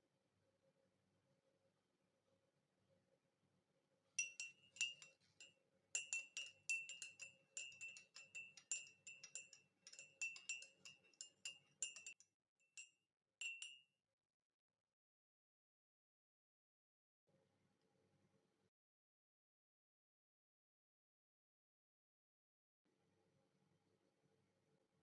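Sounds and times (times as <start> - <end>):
teaspoon clinking in a cup: 4.2 - 13.9.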